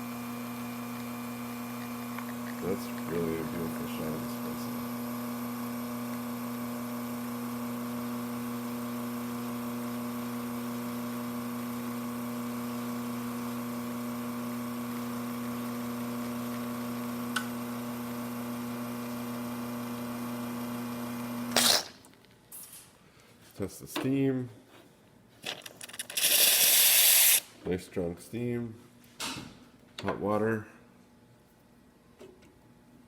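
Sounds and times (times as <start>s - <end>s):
espresso machine pump humming: 0.0s - 21.8s.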